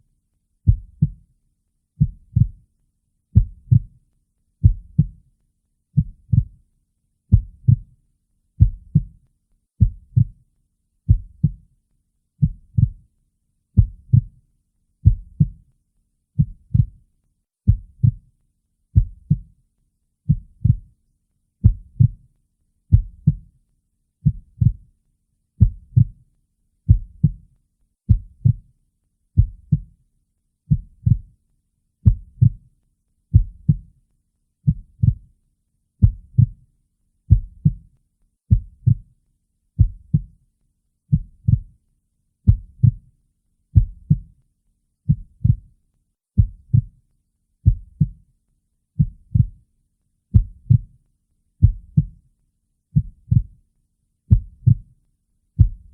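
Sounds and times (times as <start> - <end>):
heartbeat: 0.7 - 1.2, 2.0 - 2.6, 3.4 - 3.9, 4.6 - 5.2, 6.0 - 6.6, 7.3 - 7.9, 8.6 - 9.2, 9.8 - 10.4, 11.1 - 11.6, 12.4 - 13.0, 13.8 - 14.4, 15.0 - 15.6, 16.4 - 17.0, 17.7 - 18.2, 19.0 - 19.5, 20.3 - 20.9, 21.6 - 22.2, 22.9 - 23.5, 24.2 - 24.8, 25.6 - 26.2, 26.9 - 27.4, 28.1 - 28.7, 29.4 - 29.9, 30.7 - 31.3, 32.0 - 32.6, 33.3 - 33.9, 34.7 - 35.3, 36.0 - 36.6, 37.3 - 37.8, 38.5 - 39.1, 39.8 - 40.3, 41.1 - 41.7, 42.5 - 43.0, 43.8 - 44.3, 45.1 - 45.7, 46.4 - 47.0, 47.6 - 48.2, 49.0 - 49.6, 50.3 - 50.9, 51.6 - 52.2, 53.0 - 53.6, 54.3 - 54.9, 55.6 - 55.9.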